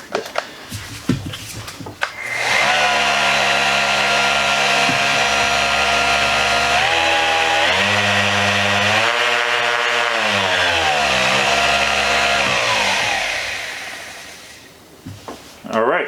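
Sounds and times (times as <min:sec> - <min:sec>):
orbit sander motor whine: 0:02.1 - 0:14.7.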